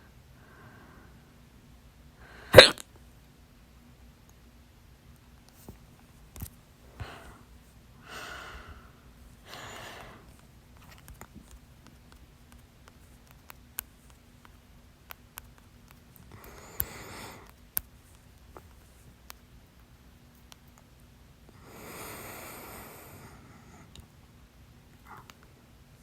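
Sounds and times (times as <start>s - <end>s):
person breathing softly: 0.4s - 1.4s, 6.9s - 10.4s, 16.3s - 17.6s, 21.5s - 24.0s.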